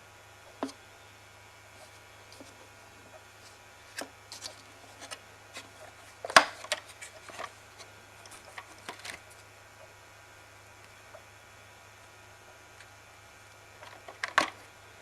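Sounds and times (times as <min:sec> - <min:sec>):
plastic parts clicking and knocking: 0:06.2 - 0:07.5, 0:13.8 - 0:14.6.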